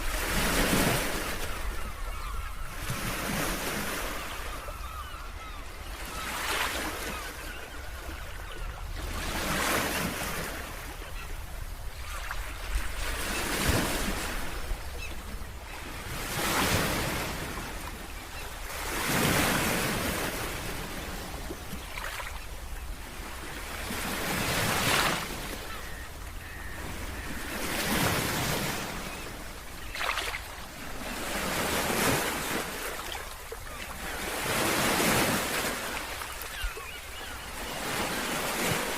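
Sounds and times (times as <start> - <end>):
sea waves breaking on beach: 15.8 - 38.9.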